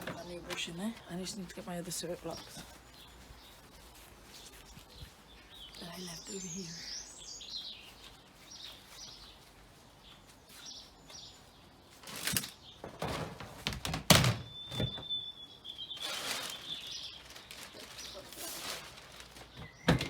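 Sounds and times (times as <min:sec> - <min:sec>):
small birds chirping faintly: 0:00.0 - 0:13.4, 0:14.4 - 0:20.0
thunks and knocks of feeder parts: 0:12.3 - 0:15.0, 0:19.6 - 0:20.0.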